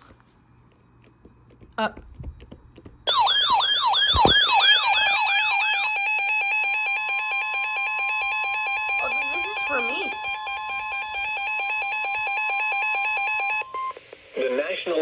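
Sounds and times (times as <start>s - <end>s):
emergency alert tone: 3.1s - 14.5s.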